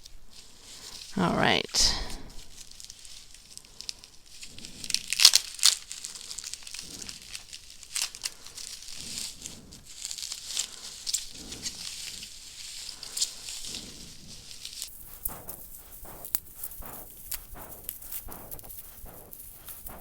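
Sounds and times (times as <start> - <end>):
packaging crinkling and tearing: 4.8 - 8.8.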